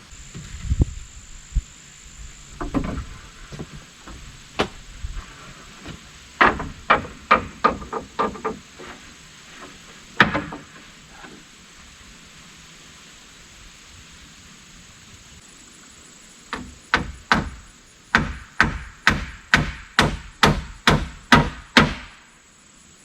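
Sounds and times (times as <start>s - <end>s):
hammer driving nails into wood: 5.8s - 8.9s, 10.2s - 10.8s, 16.6s - 22.2s.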